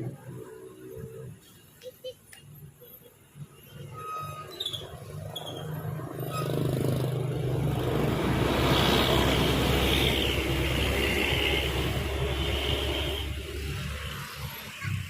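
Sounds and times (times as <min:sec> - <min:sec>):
vehicle engine hum: 0:00.0 - 0:15.0.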